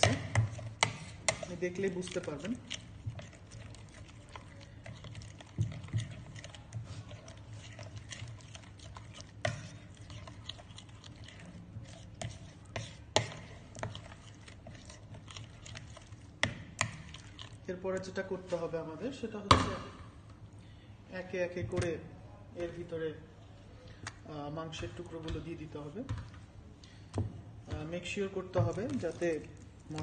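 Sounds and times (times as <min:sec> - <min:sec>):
wet squishing of stirred marinade: 0:00.0 - 0:20.5, 0:21.3 - 0:30.0.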